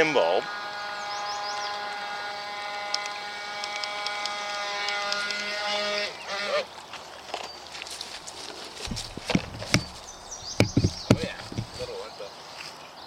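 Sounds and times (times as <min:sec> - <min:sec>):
electric motor whining: 0:08.9 - 0:11.9.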